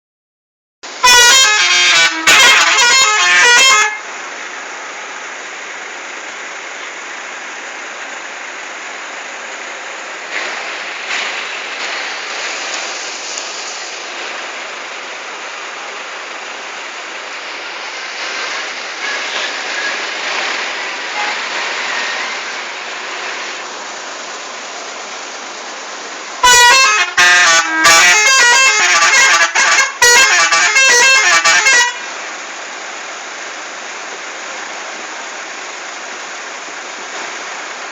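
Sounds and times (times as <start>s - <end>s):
multi-tone bus air horn tune: 1.0s - 4.1s, 26.4s - 32.1s.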